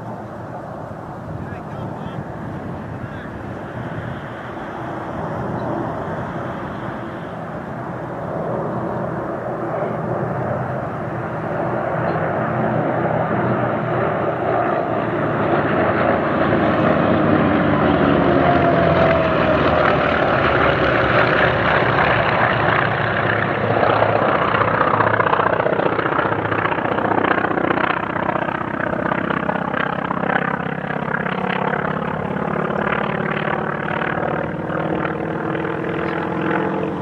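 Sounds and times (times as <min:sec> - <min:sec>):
piston fighter planes flying past: 0:00.0 - 0:37.0.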